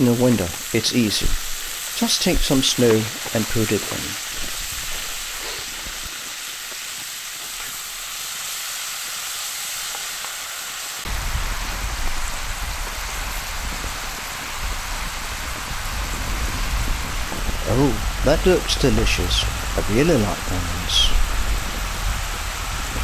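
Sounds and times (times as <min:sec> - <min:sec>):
onions sizzling in a pan: 0:00.0 - 0:23.0
low rumble: 0:11.1 - 0:23.0.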